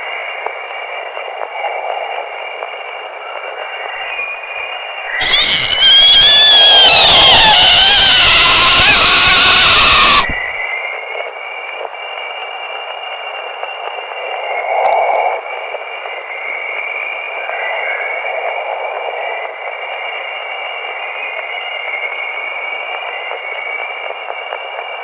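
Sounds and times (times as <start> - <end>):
static hiss: 4.0 - 10.6
wailing gliding tones: 4.1 - 10.6.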